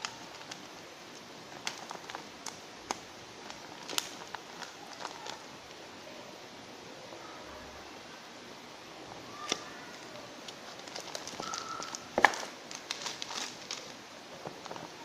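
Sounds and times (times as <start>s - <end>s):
packaging rustling and clicking: 0.0s - 5.5s, 9.4s - 15.0s.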